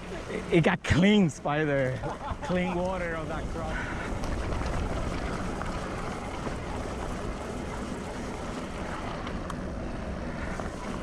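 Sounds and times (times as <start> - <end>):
bike tyres on trail: 0.0 - 11.0
wind rumble on microphone: 3.1 - 9.5.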